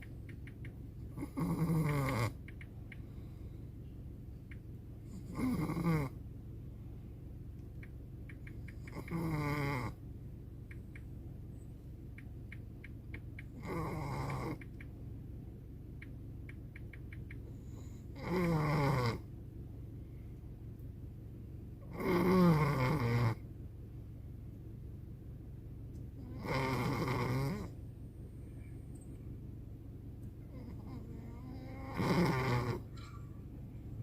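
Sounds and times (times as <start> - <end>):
dog snoring: 1.2 - 2.4, 5.1 - 6.2, 8.8 - 10.0, 13.6 - 14.7, 17.5 - 19.3, 21.8 - 23.4, 26.2 - 27.8, 30.5 - 32.9.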